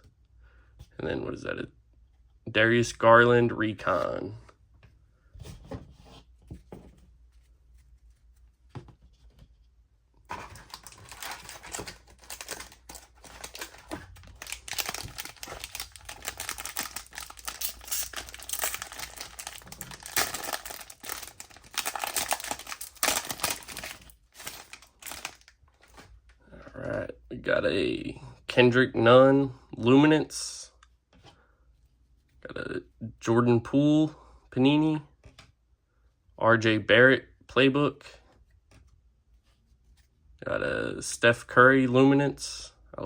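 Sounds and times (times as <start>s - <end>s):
plastic wrapper tearing and crinkling: 10.3s - 26.1s.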